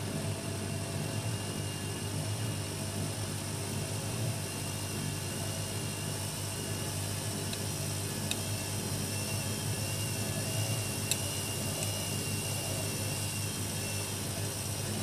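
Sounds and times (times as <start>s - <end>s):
washing machine running: 0.0s - 15.0s.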